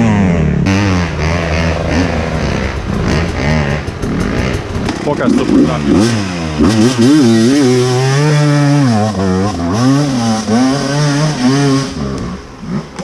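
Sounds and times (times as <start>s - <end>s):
dirt bike engine revving: 0.0s - 13.0s.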